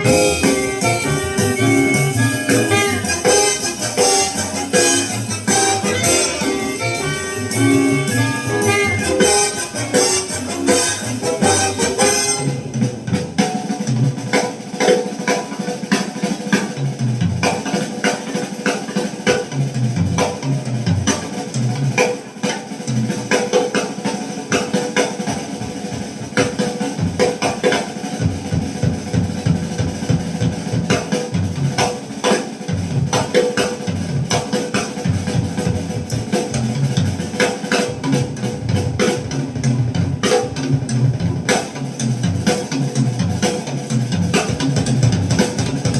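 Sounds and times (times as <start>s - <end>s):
walking bass line: 0.0s - 13.0s
busy drum kit: 0.0s - 45.9s
jazz over loudspeakers: 0.0s - 45.9s.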